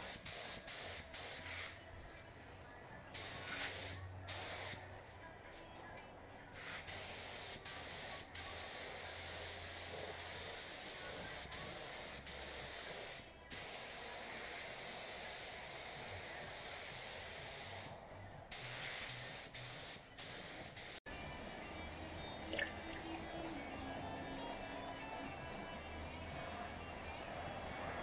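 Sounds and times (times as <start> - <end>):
paint spray gun hissing: 0.0 - 1.7, 3.2 - 4.8, 6.6 - 17.9, 18.5 - 21.0.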